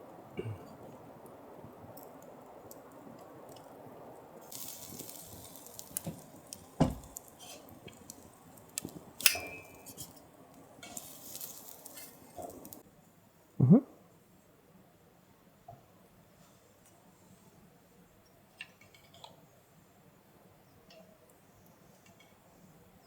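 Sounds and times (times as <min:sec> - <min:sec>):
soft hissing: 0:00.0 - 0:12.8.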